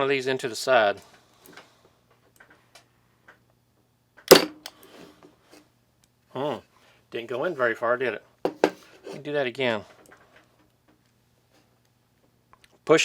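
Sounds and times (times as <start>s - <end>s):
staple gun snap: 4.3s - 4.8s.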